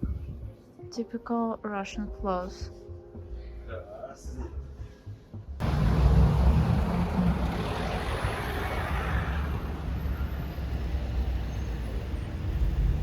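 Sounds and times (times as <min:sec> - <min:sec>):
road vehicle rumble: 0:05.6 - 0:13.0.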